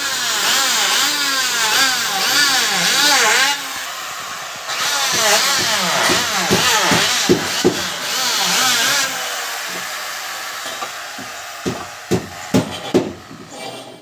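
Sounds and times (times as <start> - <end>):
electric wood planer cutting: 0.0 - 13.8
knocks: 10.7 - 13.5.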